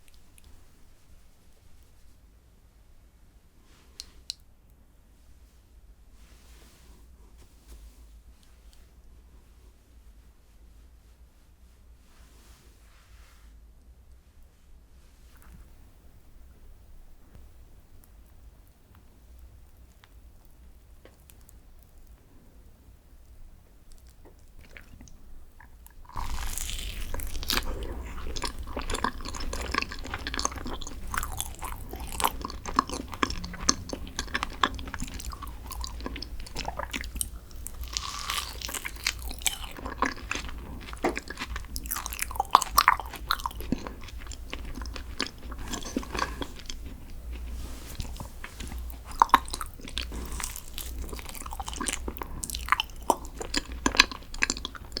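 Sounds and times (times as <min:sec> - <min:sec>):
biting and chewing: 0:24.0 - 0:55.0.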